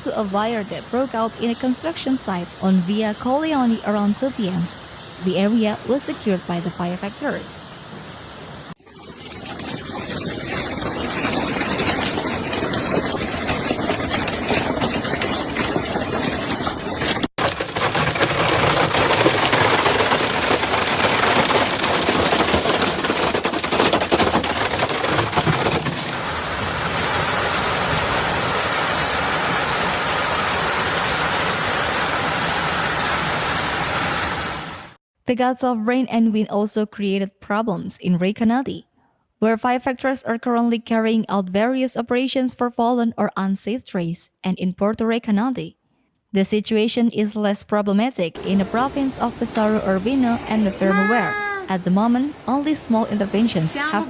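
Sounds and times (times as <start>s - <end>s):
hail and rain pelting: 17.4s - 26.3s, 52.8s - 54.0s.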